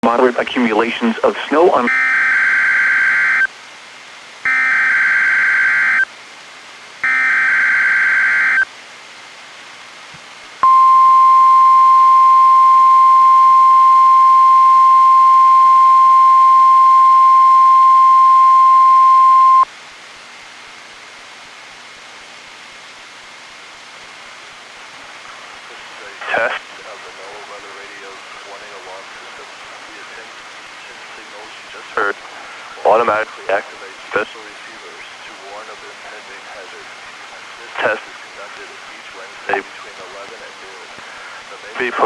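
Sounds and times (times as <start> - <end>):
radio receiver hiss: 0.0 - 3.6, 24.5 - 42.0
steady warning alarm tone: 1.8 - 3.5, 4.5 - 6.0, 7.0 - 8.6, 10.6 - 19.6.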